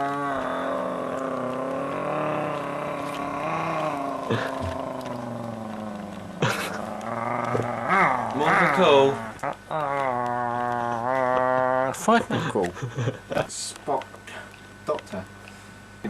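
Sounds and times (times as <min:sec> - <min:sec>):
person droning a long note: 0:00.0 - 0:12.1.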